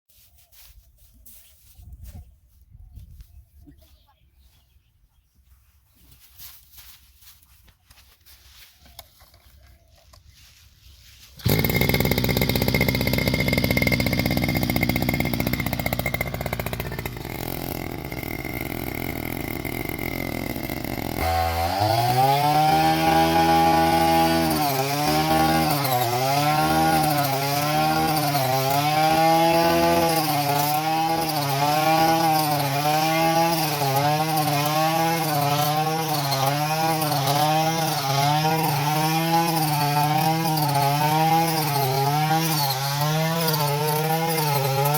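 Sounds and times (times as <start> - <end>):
small harvester engine running: 11.4 - 44.9.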